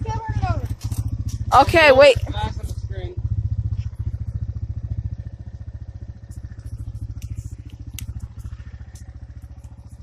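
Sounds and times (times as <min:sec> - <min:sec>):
four-wheeler engine puttering: 0:00.0 - 0:10.0
sharp cracks and clicks: 0:06.4 - 0:10.0.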